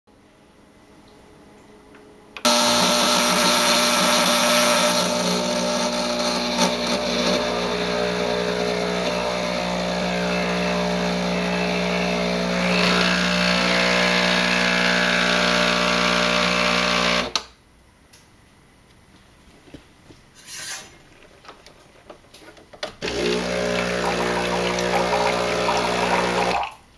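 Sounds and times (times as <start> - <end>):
coffee grinder motor whine: 2.5 - 17.4, 23.0 - 26.7.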